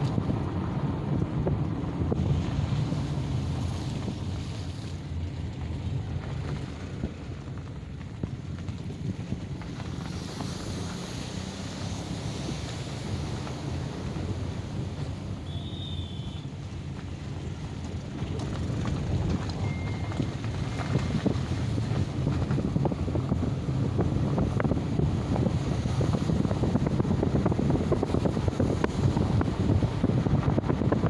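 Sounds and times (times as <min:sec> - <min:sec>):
wind on microphone: 0:00.0 - 0:31.0
ocean waves breaking: 0:02.1 - 0:05.3, 0:09.5 - 0:30.5.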